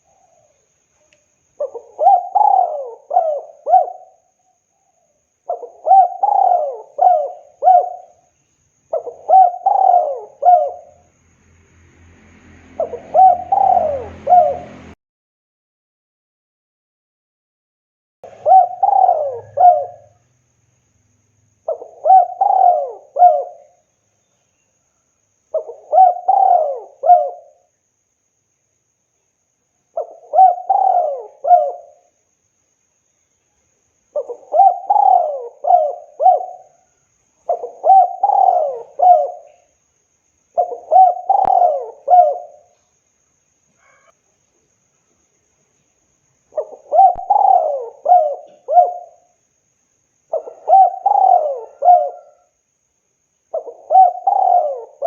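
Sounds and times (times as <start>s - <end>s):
dove cooing: 1.6s - 4.3s, 5.4s - 8.2s, 8.9s - 11.0s, 12.8s - 15.0s, 18.2s - 20.2s, 21.7s - 23.8s, 25.5s - 27.7s, 30.0s - 32.1s, 34.1s - 39.7s, 40.6s - 42.8s, 46.5s - 49.4s, 50.3s - 52.6s, 53.5s - 55.0s.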